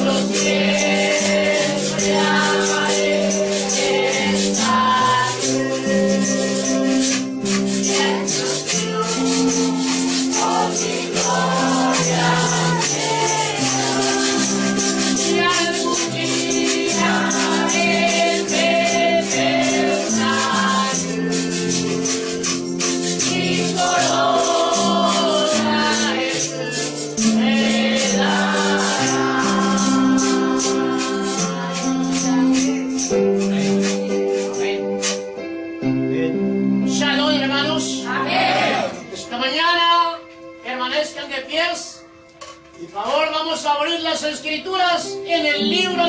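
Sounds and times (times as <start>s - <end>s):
shaker rattling rhythm: 0.0s - 35.5s
church hymn music: 0.0s - 46.0s.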